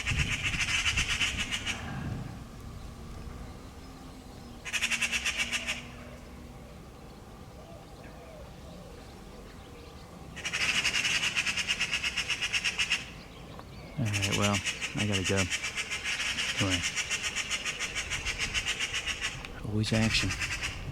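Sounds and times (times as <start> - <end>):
magpies chattering alarm rattle: 0.0 - 20.9.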